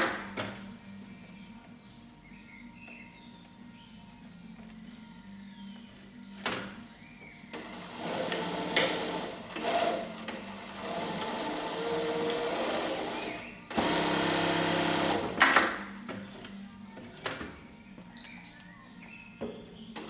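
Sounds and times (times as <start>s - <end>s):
sewing machine stitching: 7.6s - 15.6s.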